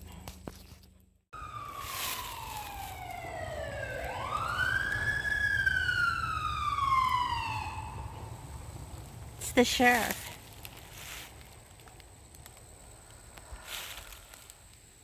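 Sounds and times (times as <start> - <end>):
siren wailing: 1.4 - 8.8.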